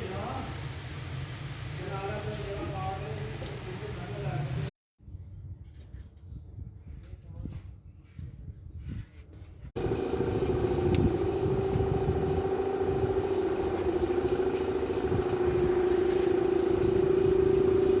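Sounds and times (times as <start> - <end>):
machine whine over low rumble: 9.8 - 18.0.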